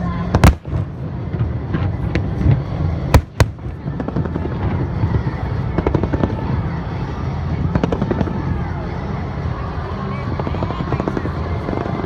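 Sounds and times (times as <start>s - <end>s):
loud firework bangs: 0.4s - 1.2s, 3.2s - 4.0s
fireworks crackling: 0.4s - 1.3s, 3.2s - 4.1s.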